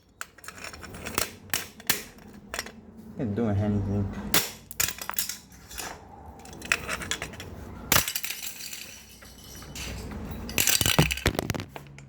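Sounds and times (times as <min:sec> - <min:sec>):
plastic cracking: 0:10.8 - 0:12.0.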